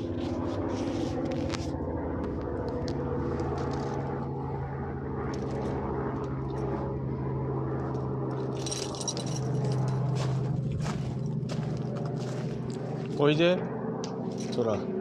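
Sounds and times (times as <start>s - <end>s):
engine drone: 0.0s - 15.0s.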